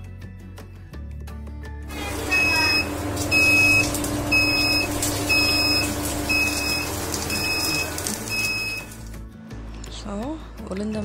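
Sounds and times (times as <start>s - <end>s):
timer alarm beeping: 2.0s - 9.0s.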